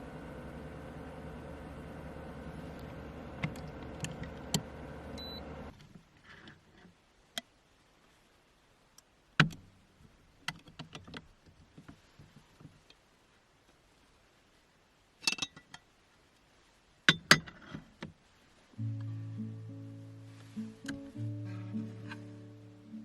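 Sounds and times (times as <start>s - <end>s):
machine hum: 0.0s - 5.7s.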